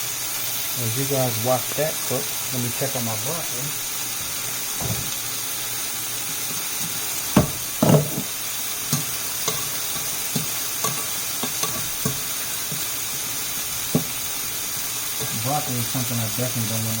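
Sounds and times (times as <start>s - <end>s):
food sizzling in a pan: 0.0s - 17.0s
utensils knocking on cookware: 6.3s - 14.2s, 15.2s - 15.7s.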